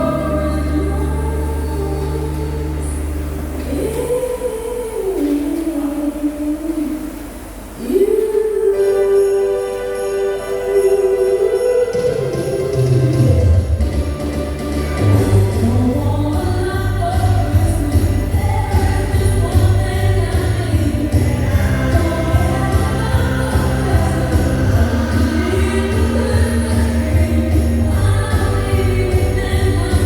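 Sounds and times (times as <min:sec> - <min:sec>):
heavy bass line: 0:00.0 - 0:04.1, 0:13.3 - 0:30.0
person singing: 0:00.0 - 0:07.2, 0:15.0 - 0:30.0.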